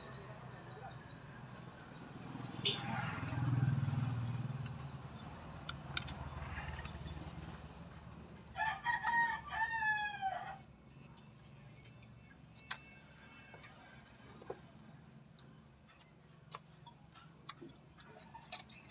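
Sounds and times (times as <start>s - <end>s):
rooster crowing: 8.6s - 10.6s.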